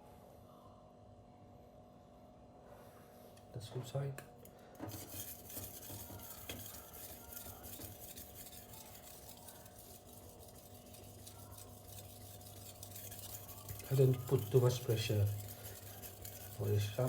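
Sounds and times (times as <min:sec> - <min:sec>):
steady low hum: 0:04.6 - 0:17.0
knife scraping on whetstone: 0:04.9 - 0:17.0.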